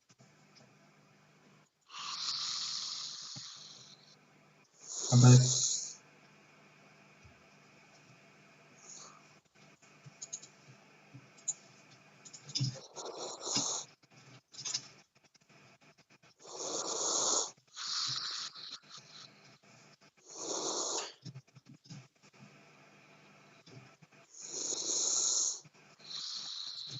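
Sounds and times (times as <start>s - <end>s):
person snoring: 1.9s - 4.1s, 4.8s - 6.0s, 12.8s - 13.9s, 16.4s - 19.3s, 20.3s - 21.2s, 24.4s - 26.9s
faint clicks: 9.6s - 10.6s.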